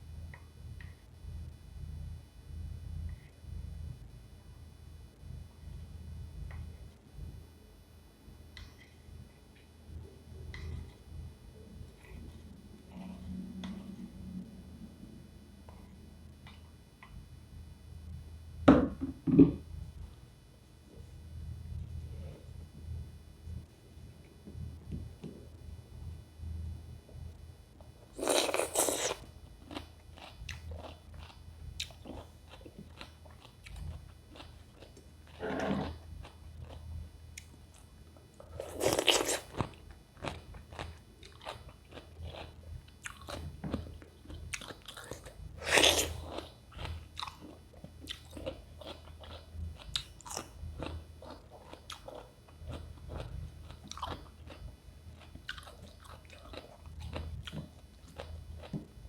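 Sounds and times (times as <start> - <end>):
crunchy bites into cucumber: 28.2 - 29.2.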